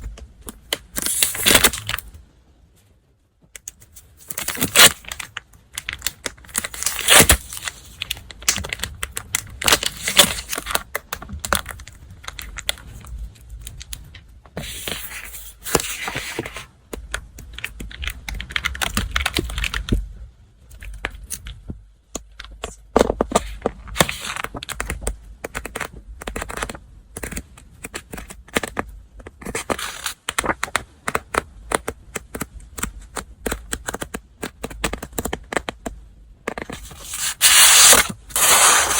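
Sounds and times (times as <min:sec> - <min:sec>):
paper packaging rustling: 0:01.0 - 0:02.1, 0:04.2 - 0:08.9, 0:09.6 - 0:10.8, 0:36.6 - 0:38.9.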